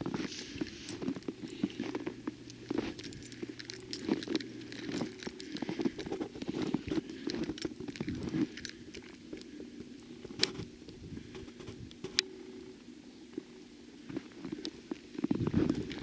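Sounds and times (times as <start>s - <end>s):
footsteps crunching in snow: 0.0s - 8.5s.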